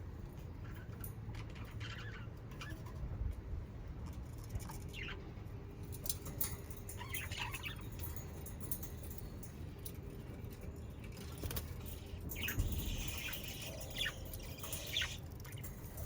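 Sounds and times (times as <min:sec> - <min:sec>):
budgies chirping: 0:04.6 - 0:05.2, 0:07.0 - 0:08.1, 0:11.9 - 0:15.8.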